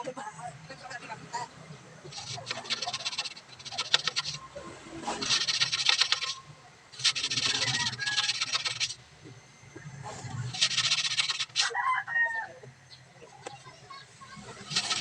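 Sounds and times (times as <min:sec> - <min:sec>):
scraping strokes: 0:02.0 - 0:09.0, 0:10.0 - 0:11.8, 0:14.3 - 0:15.0.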